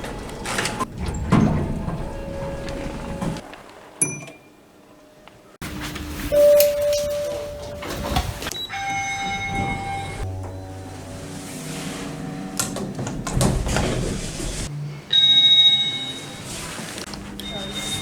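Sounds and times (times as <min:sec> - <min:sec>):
elevator hum: 0:00.0 - 0:03.5, 0:05.6 - 0:18.0
elevator chime: 0:01.1 - 0:03.4, 0:06.2 - 0:14.1, 0:15.1 - 0:18.0
elevator beep: 0:06.3 - 0:13.3, 0:15.1 - 0:16.7, 0:17.3 - 0:18.0.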